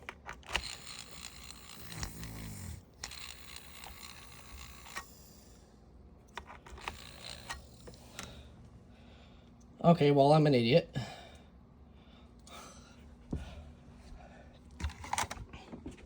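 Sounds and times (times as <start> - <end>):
sharp handling clicks: 0.0 - 5.2, 6.2 - 8.4
exhaust fan hiss and whine: 0.0 - 16.0.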